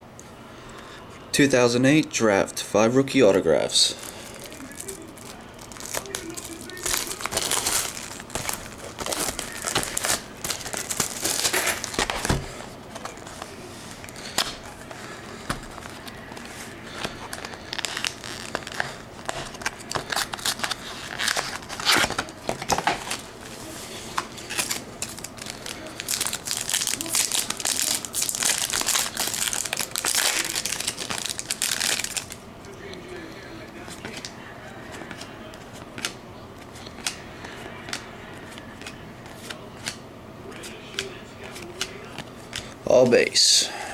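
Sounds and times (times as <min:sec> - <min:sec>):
packaging crinkled and torn open: 0:03.9 - 0:23.3, 0:24.2 - 0:32.4.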